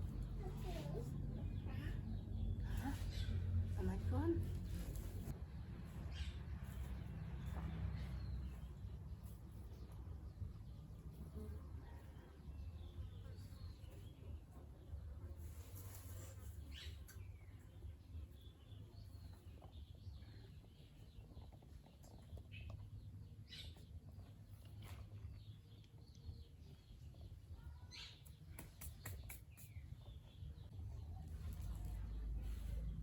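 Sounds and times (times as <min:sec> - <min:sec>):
low steady rumble: 0:00.0 - 0:12.0, 0:30.4 - 0:33.0
small birds chirping: 0:00.0 - 0:33.0.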